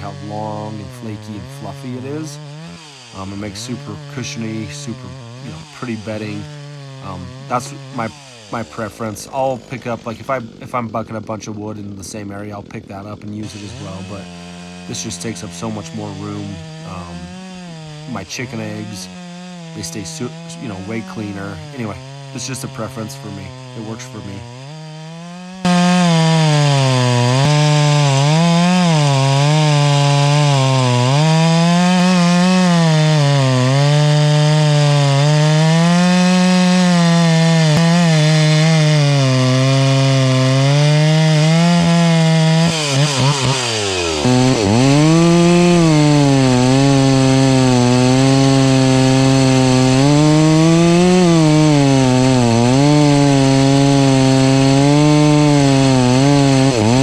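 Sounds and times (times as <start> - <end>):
chainsaw cutting log: 0.0 - 57.0.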